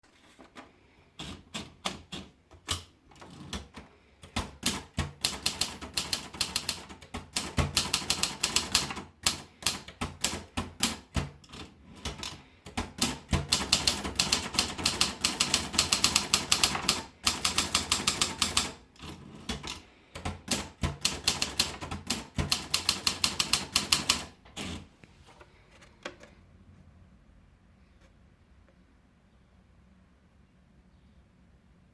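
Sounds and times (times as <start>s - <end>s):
typewriter keys striking: 1.2s - 24.8s.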